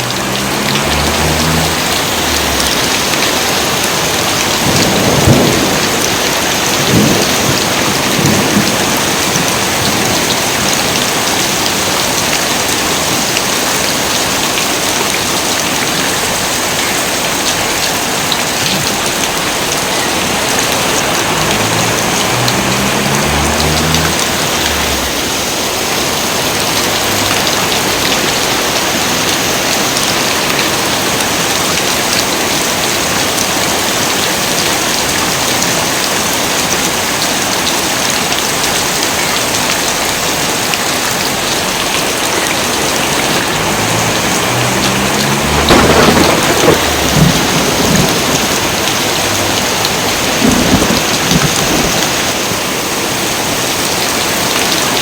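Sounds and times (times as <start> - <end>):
heavy rain pouring: 0.0 - 55.0
thunder cracking and rumbling: 0.4 - 11.2, 43.1 - 52.4.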